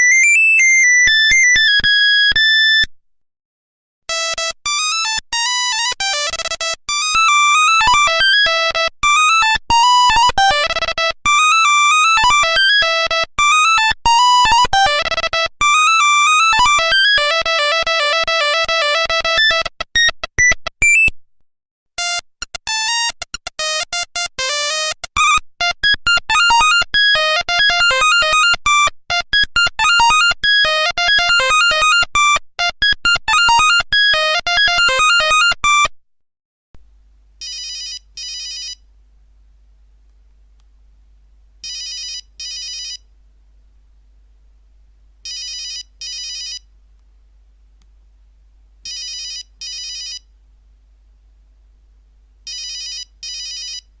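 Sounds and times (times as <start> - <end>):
buzzy beeping ringtone melody: 29.6 - 35.9
faint low hum: 36.8 - 54.0.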